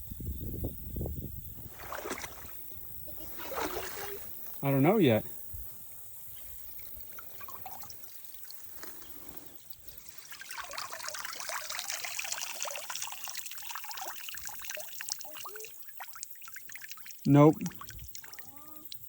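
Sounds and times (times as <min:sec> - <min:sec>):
water pouring and dripping: 0:06.6 - 0:19.0.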